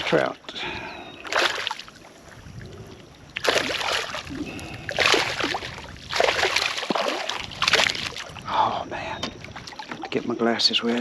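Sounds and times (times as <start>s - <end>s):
fish thrashing and splashing water: 1.2s - 2.1s, 3.3s - 8.4s, 9.4s - 10.2s.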